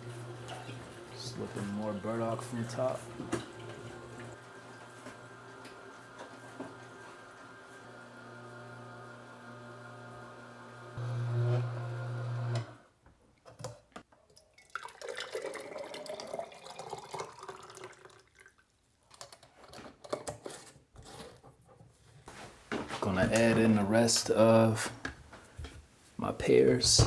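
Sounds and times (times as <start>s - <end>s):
juicer motor humming: 0.0s - 12.9s
liquid dripping and trickling: 14.3s - 18.6s.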